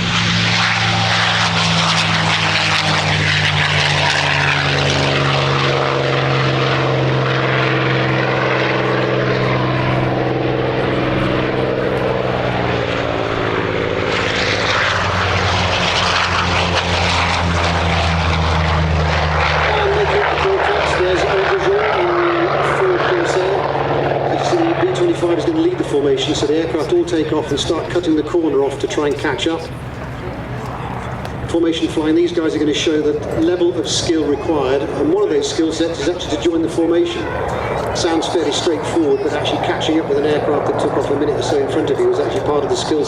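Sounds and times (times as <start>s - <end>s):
deeper engine note: 0.0s - 43.0s
propeller plane engines droning: 0.0s - 43.0s.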